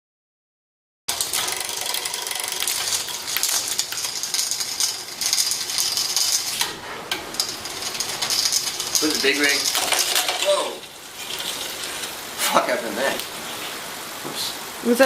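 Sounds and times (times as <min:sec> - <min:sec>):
metallic clicking and clinking: 0:01.1 - 0:12.2
steady hiss: 0:01.1 - 0:15.0.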